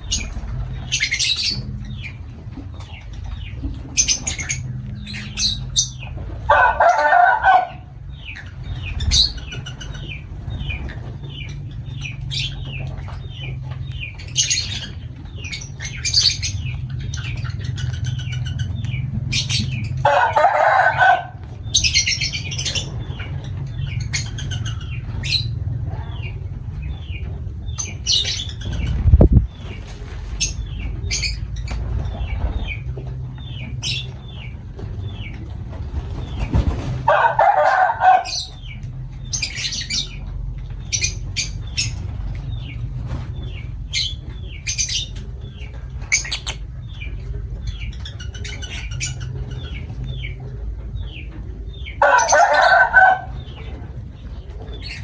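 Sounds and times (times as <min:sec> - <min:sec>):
lovebirds chirping shrilly: 0:43.4 - 0:47.1
lower bird calls: 0:43.5 - 0:50.4.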